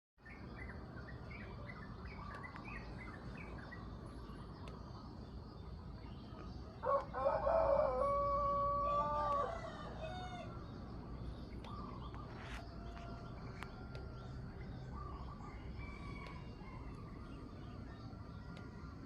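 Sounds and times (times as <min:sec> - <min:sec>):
low background noise: 0:00.2 - 0:19.0
rooster crowing: 0:06.8 - 0:10.6, 0:12.5 - 0:17.2.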